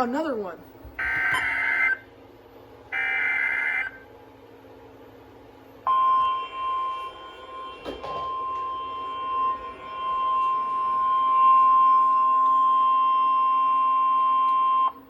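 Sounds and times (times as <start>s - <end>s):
steady warning alarm tone: 1.0s - 2.1s, 2.9s - 4.2s, 5.6s - 15.0s.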